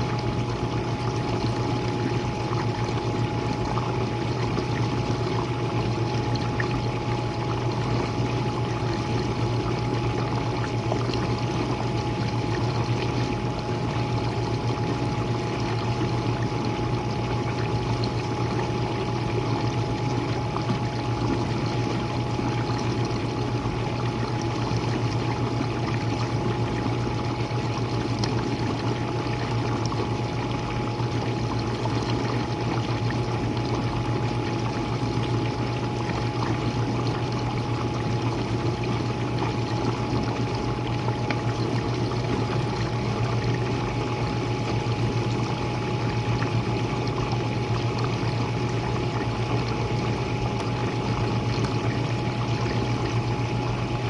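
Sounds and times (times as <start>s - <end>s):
dishwasher pump motor hum: 0.0s - 54.0s
water spraying and sloshing: 0.0s - 54.0s.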